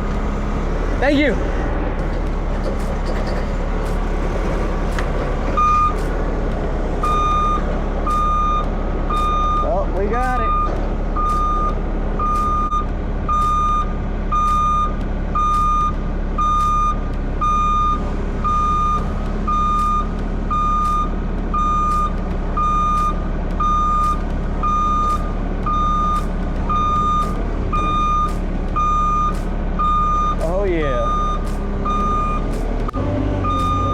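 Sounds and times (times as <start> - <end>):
diesel engine running: 0.0 - 33.9
backup alarm beeping: 5.5 - 6.1, 7.0 - 32.6, 33.4 - 33.9.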